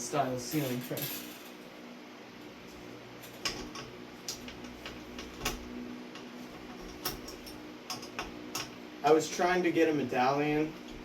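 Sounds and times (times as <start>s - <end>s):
tools and metal hardware clicking: 3.2s - 5.6s, 6.2s - 8.8s.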